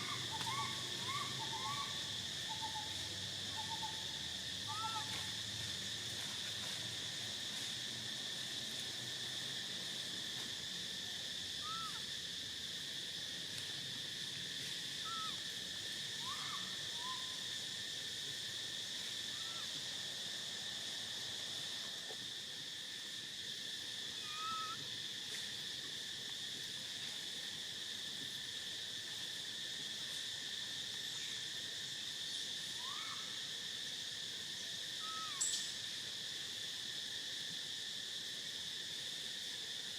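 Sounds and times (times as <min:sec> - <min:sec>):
high-pitched insect drone: 0:00.0 - 0:39.9
short arched chirping calls: 0:24.2 - 0:24.8, 0:35.0 - 0:35.7.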